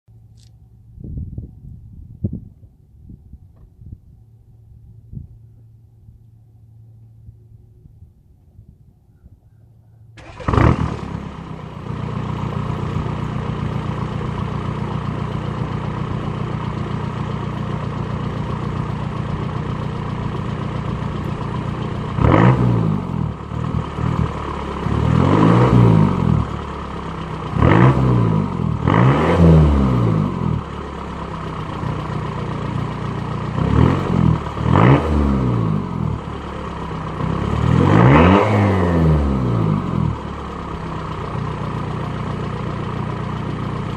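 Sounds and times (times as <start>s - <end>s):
diesel engine starting and revving: 10.1s - 43.9s.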